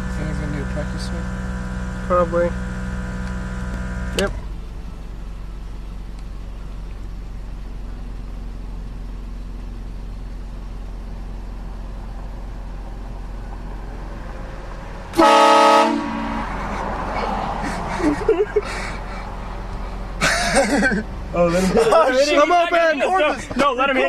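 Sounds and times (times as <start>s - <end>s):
vehicle idling hum: 0.0s - 24.0s
train horn blast: 15.1s - 16.6s.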